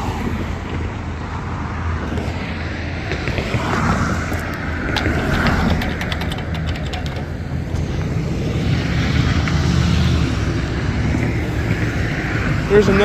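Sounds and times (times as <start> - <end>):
road traffic rumble: 0.0 - 13.0
sharp clicks: 3.1 - 8.1.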